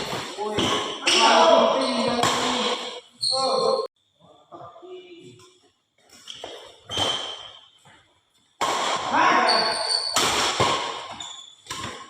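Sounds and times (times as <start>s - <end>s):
players' loud voices: 0.3s - 3.9s
racket hitting shuttlecock: 2.1s - 2.9s, 6.1s - 7.6s, 8.6s - 12.0s.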